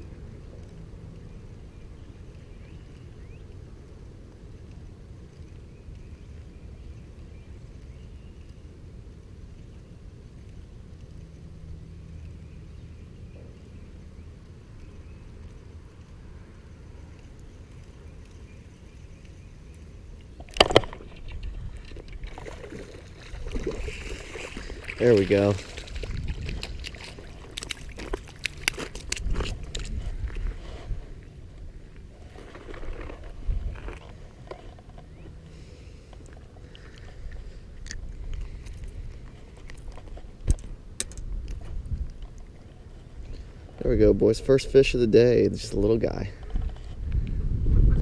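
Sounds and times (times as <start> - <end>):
wind rumbling on microphone: 0.0 - 48.0
fishing tackle clicks and knocks: 20.4 - 22.4, 26.0 - 30.4, 36.2 - 42.4
rustling: 20.5 - 43.8.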